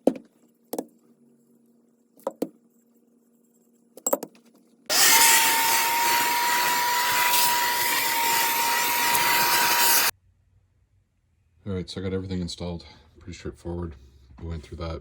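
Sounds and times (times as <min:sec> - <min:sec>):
electric motor whining: 0:04.9 - 0:10.1.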